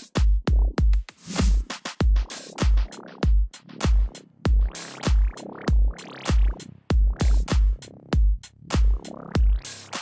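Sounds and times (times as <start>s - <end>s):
drum machine beat: 0.0s - 10.0s
electronic music: 0.0s - 10.0s
swept synth sounds: 2.4s - 10.0s.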